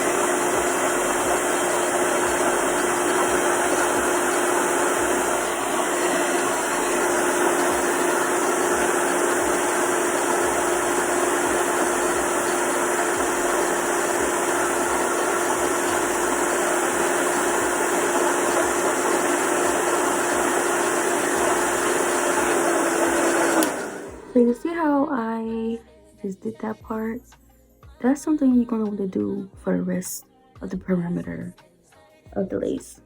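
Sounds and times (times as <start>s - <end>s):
hair dryer blowing: 0.0s - 24.5s.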